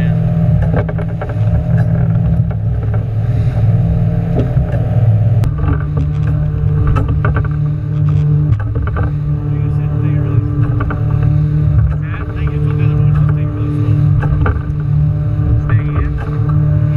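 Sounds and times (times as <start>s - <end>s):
motorboat engine running: 0.0s - 16.9s
short knocks and thumps: 4.3s - 9.3s, 10.4s - 16.6s.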